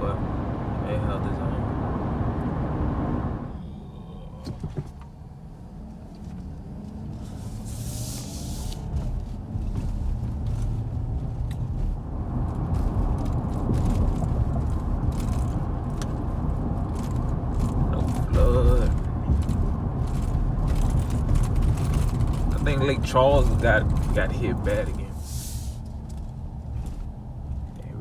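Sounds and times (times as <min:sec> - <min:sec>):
car engine and road noise: 0:00.0 - 0:28.0
brief hiss: 0:07.3 - 0:08.8, 0:25.2 - 0:25.8.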